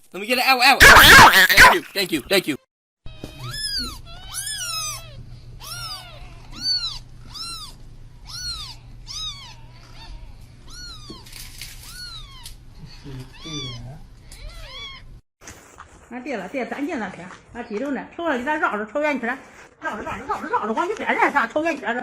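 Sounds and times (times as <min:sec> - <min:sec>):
kitten mewing: 0:00.8 - 0:01.8, 0:03.1 - 0:15.0.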